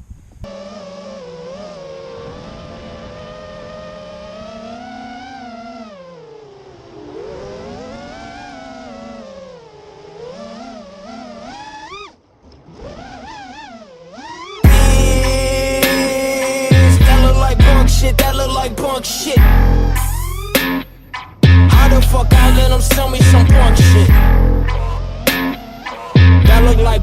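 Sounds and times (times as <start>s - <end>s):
quadcopter motors whining: 0.0s - 20.5s.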